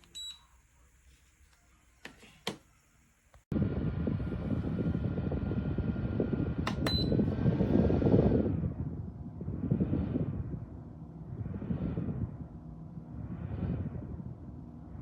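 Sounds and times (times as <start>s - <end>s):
fan airflow rushing: 3.5s - 15.0s
fan motor whine: 3.5s - 15.0s.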